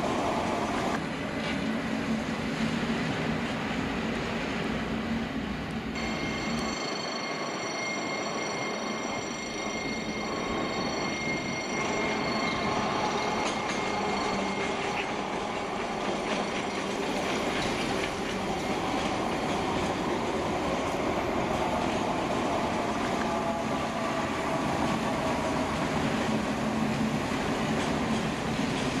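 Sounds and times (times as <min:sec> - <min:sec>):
train wheels on rails: 0:00.0 - 0:29.0
steady high-pitched tones: 0:06.0 - 0:27.4.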